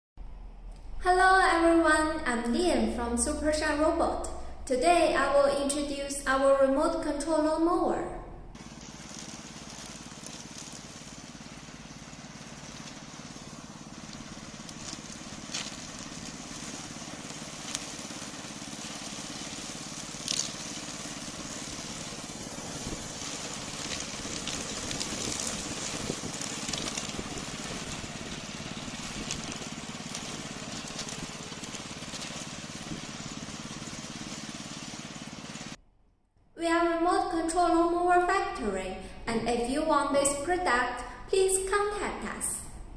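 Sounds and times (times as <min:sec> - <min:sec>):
lawn mower running: 0:08.6 - 0:35.8.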